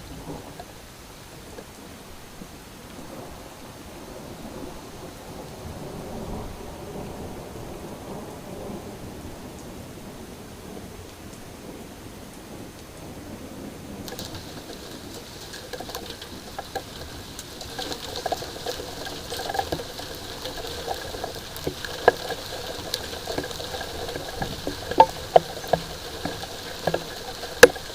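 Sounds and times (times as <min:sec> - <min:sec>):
light rain pattering: 0:00.0 - 0:27.9
drops ticking on hard surface: 0:14.1 - 0:27.9.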